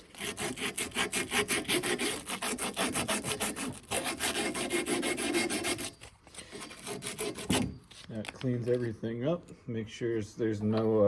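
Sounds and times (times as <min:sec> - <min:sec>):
sandpaper rubbing copper pipe: 0:00.0 - 0:08.1.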